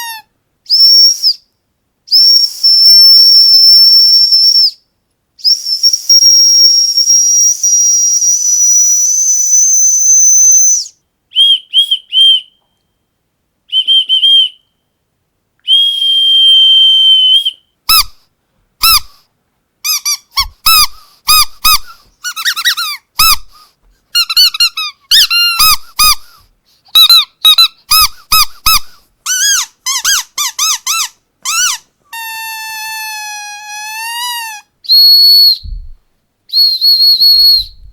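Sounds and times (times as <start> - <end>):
squeaky dog toy squeaking: 0.0 - 0.3, 17.9 - 18.2, 18.8 - 19.2, 19.8 - 36.0
dog whistle blowing: 0.0 - 1.4, 2.1 - 4.8, 5.4 - 12.7, 13.7 - 14.8, 15.7 - 18.2, 18.8 - 19.2, 19.9 - 37.9
lower whistle toots: 0.7 - 1.5, 2.1 - 13.1, 13.7 - 15.0, 15.6 - 18.2, 19.9 - 37.9.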